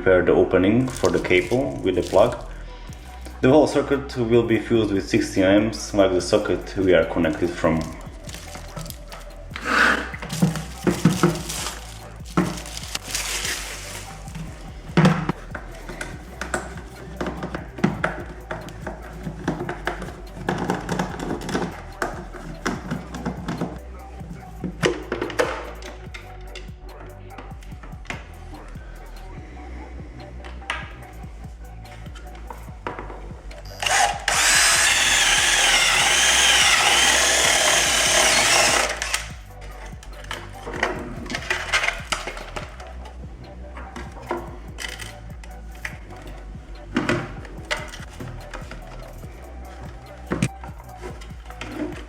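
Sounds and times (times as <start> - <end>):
electric drill whining: 33.7 - 39.4.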